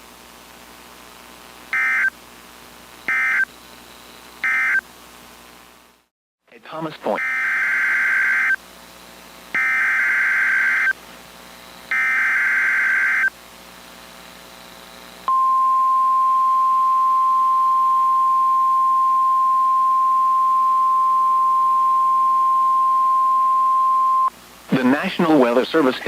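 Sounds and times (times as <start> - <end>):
buzzing data bursts: 1.7 - 2.2, 3.0 - 3.5, 4.4 - 4.8, 7.2 - 8.6, 9.6 - 11.0, 11.9 - 13.3.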